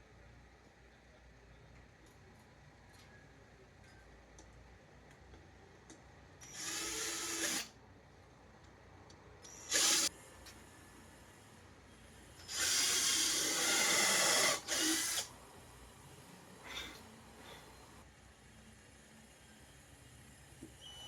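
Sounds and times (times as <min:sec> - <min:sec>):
power drill running: 0:06.4 - 0:07.7, 0:09.5 - 0:10.1, 0:12.4 - 0:15.3.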